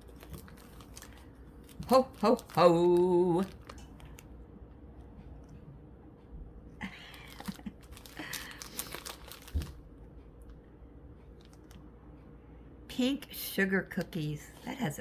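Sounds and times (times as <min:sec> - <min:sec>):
plastic packaging crinkling: 0:00.0 - 0:04.3, 0:07.0 - 0:09.9.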